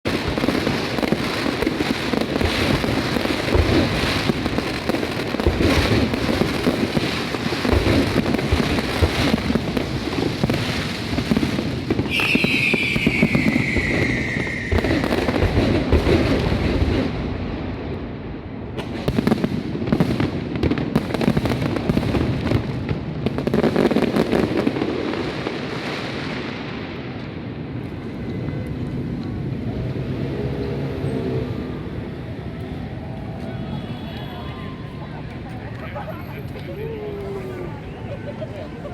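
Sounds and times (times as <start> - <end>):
fireworks bursting and crackling: 0.0 - 30.4
falling firework whistle: 11.9 - 15.9, 32.9 - 35.0.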